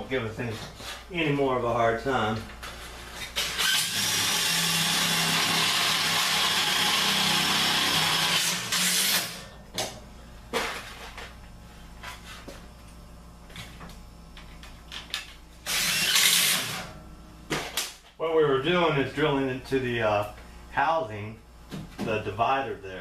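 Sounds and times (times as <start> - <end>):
power drill driving screw into metal: 3.4 - 9.4, 15.7 - 16.9.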